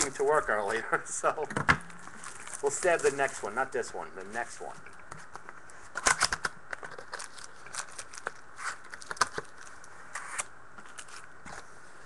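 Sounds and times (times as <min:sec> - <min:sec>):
card packaging tearing and crackling: 0:02.0 - 0:04.6, 0:05.2 - 0:11.3.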